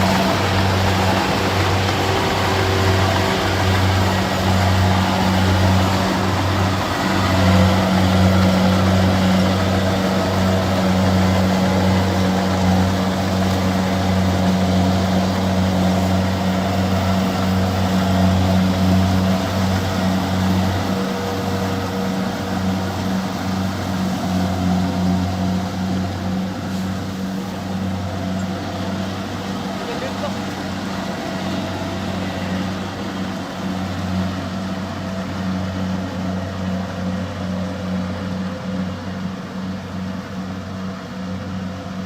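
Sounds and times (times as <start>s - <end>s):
harvesting machine engine drone: 0.0s - 42.0s.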